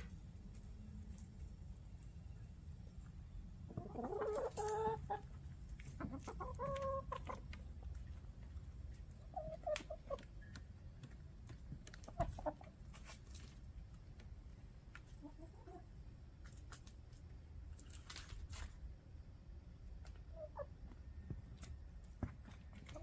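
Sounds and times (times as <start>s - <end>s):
hens clucking: 3.0s - 17.1s, 19.8s - 23.0s.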